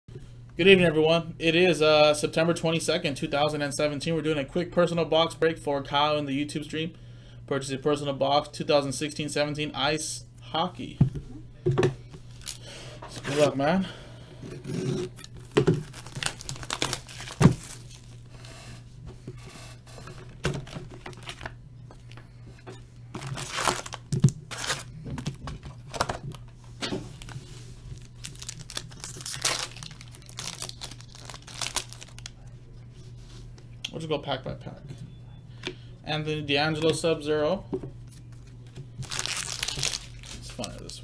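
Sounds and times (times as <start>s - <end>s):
foil packs tearing and crinkling: 12.3s - 13.5s, 15.3s - 18.3s, 20.6s - 21.5s, 23.1s - 26.4s, 27.1s - 32.4s, 39.0s - 41.0s.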